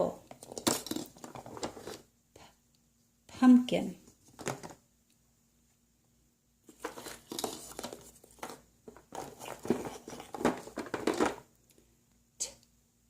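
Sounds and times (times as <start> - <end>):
rustling crinkling handling noise: 0.3 - 2.1, 6.7 - 11.5.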